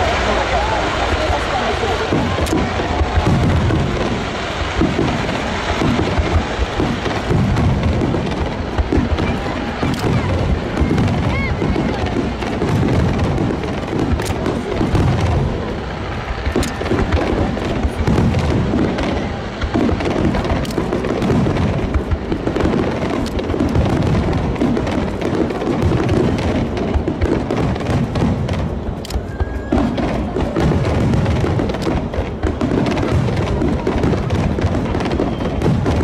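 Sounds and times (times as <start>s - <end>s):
fireworks booming and cracking: 0.0s - 36.0s.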